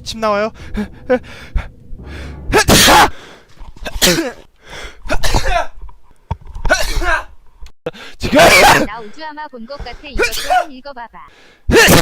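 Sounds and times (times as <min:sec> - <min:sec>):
person sneezing: 0:06.7 - 0:07.3, 0:08.4 - 0:08.9, 0:10.2 - 0:10.7.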